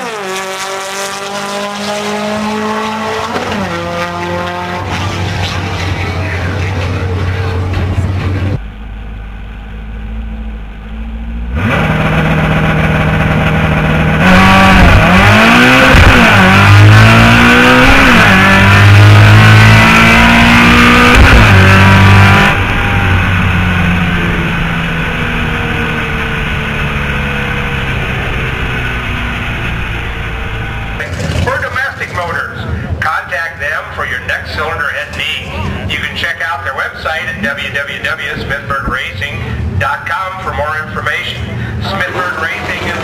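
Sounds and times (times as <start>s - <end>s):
car engine revving through gears: 0.0s - 8.6s, 11.3s - 31.8s, 42.0s - 43.0s.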